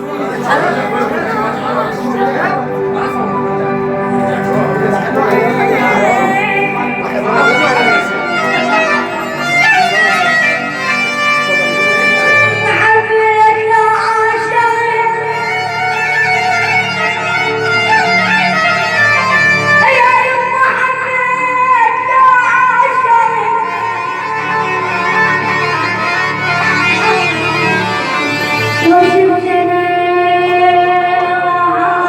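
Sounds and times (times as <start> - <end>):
song with bending melodic lines: 0.0 - 13.4, 24.2 - 31.3.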